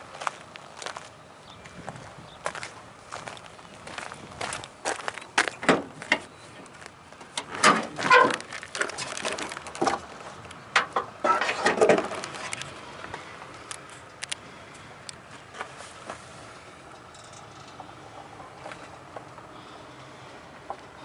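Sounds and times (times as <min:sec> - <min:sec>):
footsteps and scuffs: 0:00.2 - 0:07.0.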